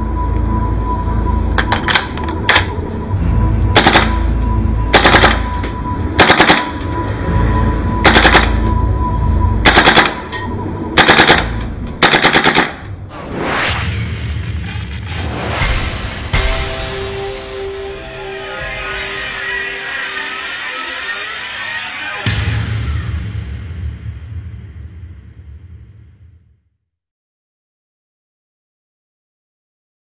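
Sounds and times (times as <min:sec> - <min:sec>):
background music: 0:00.0 - 0:26.0
airsoft gun automatic fire: 0:03.8 - 0:04.2, 0:04.9 - 0:05.6, 0:06.2 - 0:06.8, 0:08.0 - 0:08.6, 0:09.6 - 0:10.3, 0:11.0 - 0:12.8
rising whoosh: 0:13.0 - 0:24.0.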